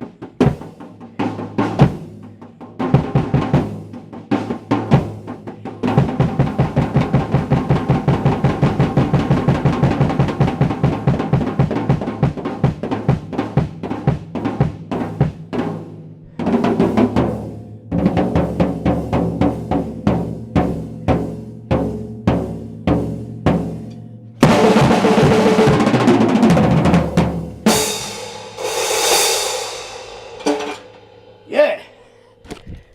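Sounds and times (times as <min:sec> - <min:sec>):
fast drum roll: 0:00.0 - 0:23.8, 0:24.4 - 0:31.9
separate drum hits: 0:00.0 - 0:23.8, 0:24.4 - 0:31.8
ringing cymbal crash: 0:27.7 - 0:32.3.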